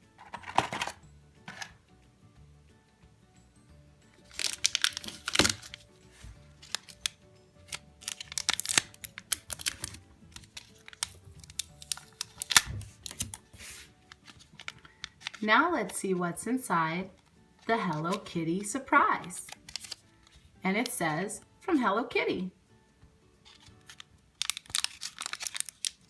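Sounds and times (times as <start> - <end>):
quiet background music: 0.0 - 26.0
plastic packaging crinkling: 4.2 - 5.9, 6.5 - 15.5, 19.4 - 20.4, 23.5 - 26.0
plastic toy parts clicking: 4.3 - 5.8, 6.6 - 13.4, 23.5 - 26.0.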